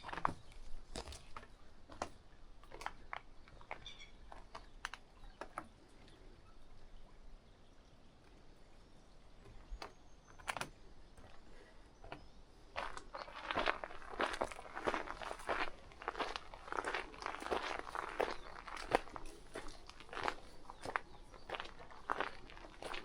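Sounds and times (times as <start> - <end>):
footsteps on a path: 0.0 - 2.0, 11.2 - 23.0.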